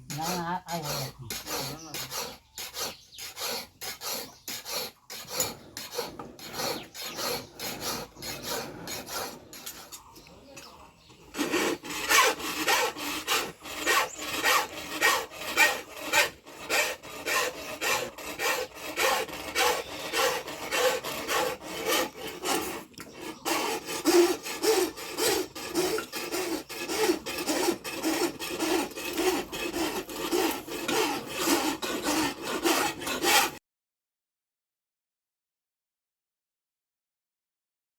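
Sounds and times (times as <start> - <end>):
hand file rasping: 0.0 - 10.1, 11.3 - 33.6.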